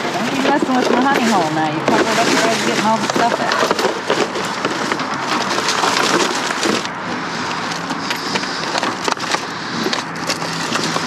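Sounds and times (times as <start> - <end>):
rustling and clattering debris: 0.0 - 11.0.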